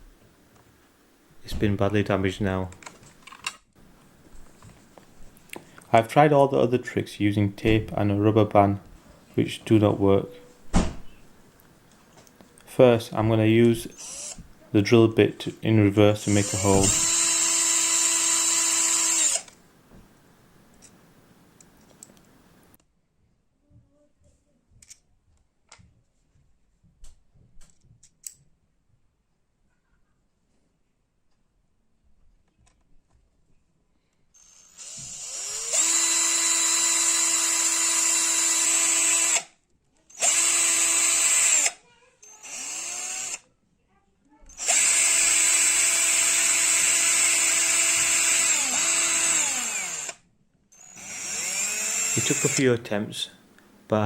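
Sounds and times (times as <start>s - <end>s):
power drill whining: 13.8s - 14.6s, 16.2s - 19.6s, 34.4s - 39.5s, 40.1s - 43.4s, 44.5s - 50.2s, 50.8s - 52.7s.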